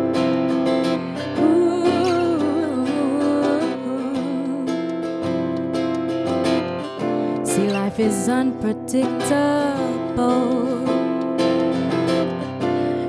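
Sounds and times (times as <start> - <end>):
acoustic guitar strumming: 0.0 - 13.0
woman singing wordless run: 1.1 - 5.7, 7.2 - 13.0.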